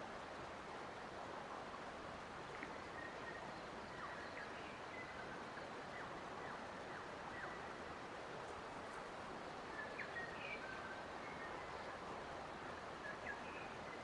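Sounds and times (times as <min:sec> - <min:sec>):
steady rushing hiss: 0:00.0 - 0:14.0
faint bird chirps: 0:02.6 - 0:07.8, 0:09.6 - 0:14.0.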